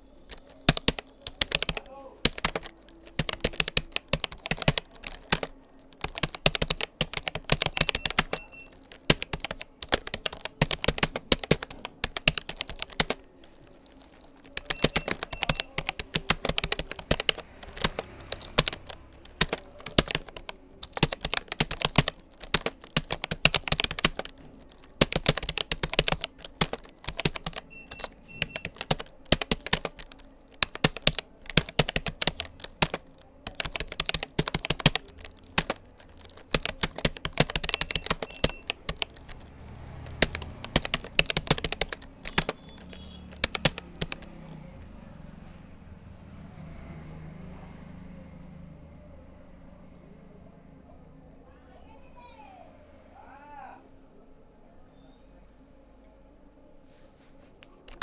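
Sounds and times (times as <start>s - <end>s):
fast typing on a keyboard: 0.2s - 44.8s.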